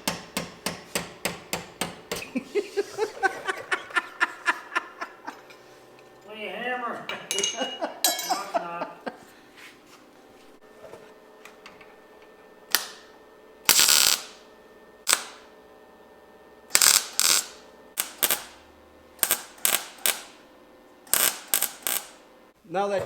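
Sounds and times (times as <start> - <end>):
hammer on sheet metal: 0.0 - 2.2.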